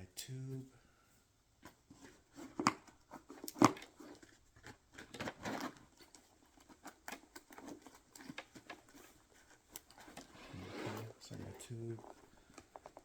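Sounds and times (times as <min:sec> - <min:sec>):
bag rustling: 0:08.8 - 0:13.0.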